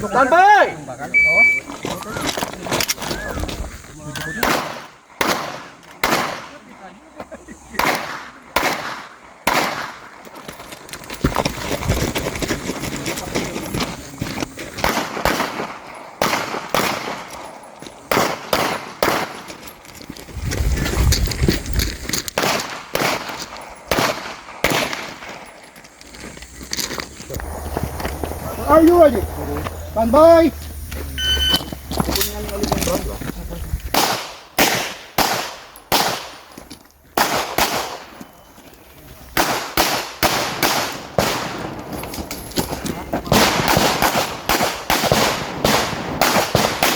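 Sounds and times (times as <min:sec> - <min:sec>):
pistol shots with echo: 0:04.4 - 0:06.7, 0:07.7 - 0:10.2, 0:14.8 - 0:19.5, 0:22.4 - 0:25.4, 0:33.9 - 0:36.5, 0:37.2 - 0:38.2, 0:39.4 - 0:41.8, 0:43.3 - 0:46.9.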